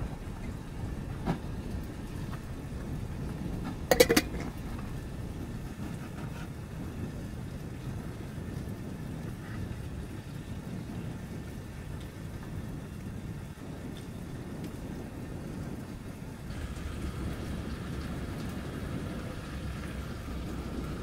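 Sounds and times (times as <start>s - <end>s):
steady low rumble: 0.0s - 10.6s
kitchenware clinking: 3.9s - 4.6s.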